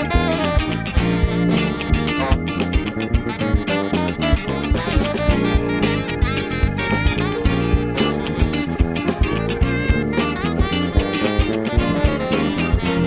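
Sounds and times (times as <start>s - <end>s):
electric guitar: 0.0s - 13.0s
jazz-funk band playing: 0.0s - 13.0s.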